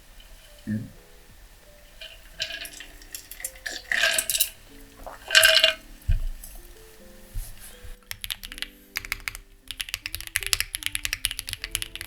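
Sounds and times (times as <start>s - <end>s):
soft background music: 0.0s - 12.0s
mechanical keyboard typing: 8.0s - 12.0s.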